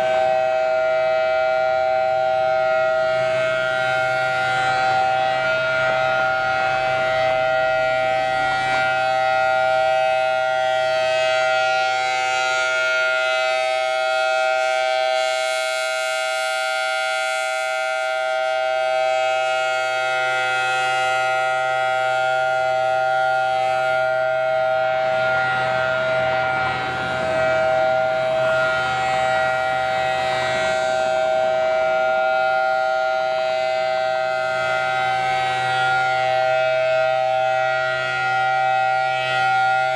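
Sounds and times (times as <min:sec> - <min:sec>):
siren steady tone: 0:00.0 - 0:39.9.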